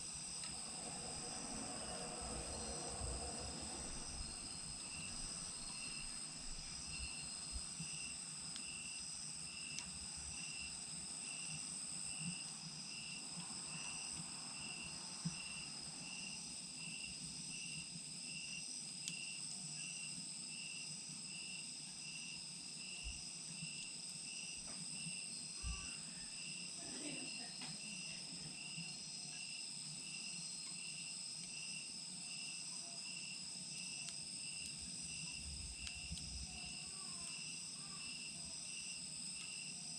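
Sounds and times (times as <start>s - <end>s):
wood fire crackling: 0.0s - 15.6s, 33.2s - 39.9s
continuous high insect trill: 0.0s - 39.9s.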